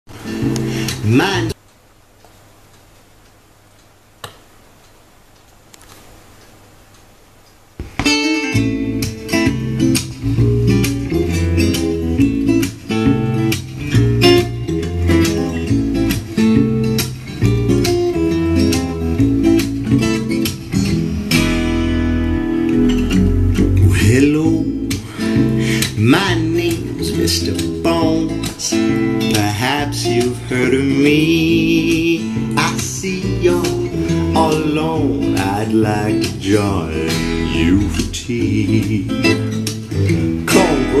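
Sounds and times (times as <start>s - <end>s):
plucked and strummed guitar: 0.1s - 1.6s, 7.8s - 41.0s
bass line: 8.5s - 41.0s.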